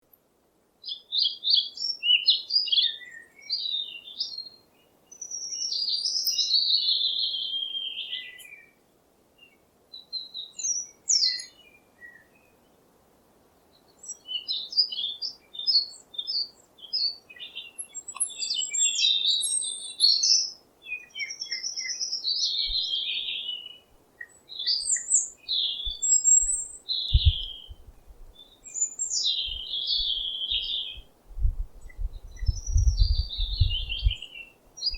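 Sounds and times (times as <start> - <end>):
faint background hiss: 0.0 - 34.9
songbirds chirping and singing: 14.0 - 34.9.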